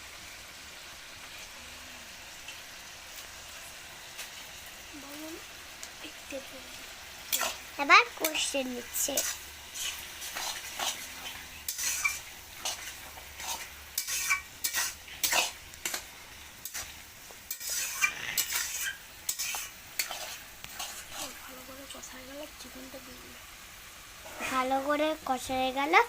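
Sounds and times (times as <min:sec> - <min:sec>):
food sizzling in a pan: 0:00.0 - 0:26.0
utensil scraping a pan: 0:07.3 - 0:21.5, 0:24.2 - 0:24.8.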